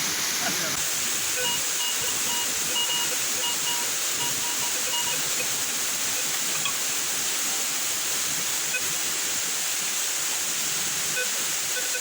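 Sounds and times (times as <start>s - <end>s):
waterfall and stream hiss: 0.0s - 12.0s
metal detector beeping: 1.3s - 5.5s.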